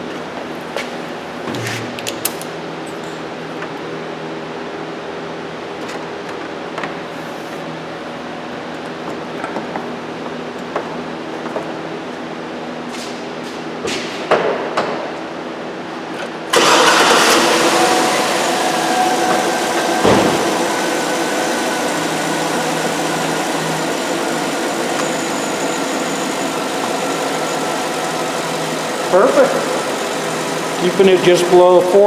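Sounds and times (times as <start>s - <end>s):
engine starting and idling: 16.5s - 32.0s
engine knock: 16.6s - 32.0s.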